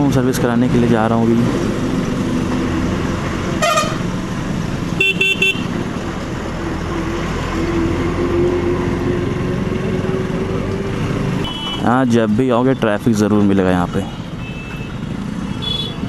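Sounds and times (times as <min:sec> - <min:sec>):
traffic noise: 0:00.0 - 0:16.0
vehicle horns honking: 0:03.6 - 0:04.1, 0:05.0 - 0:05.8, 0:11.4 - 0:12.1, 0:14.4 - 0:16.0.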